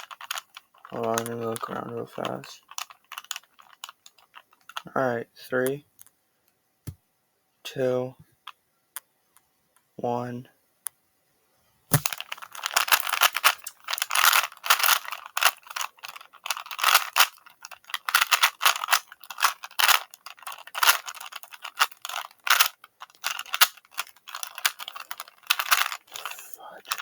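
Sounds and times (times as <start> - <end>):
puzzle cube clicking and clacking: 0.0 - 4.9, 11.9 - 27.0.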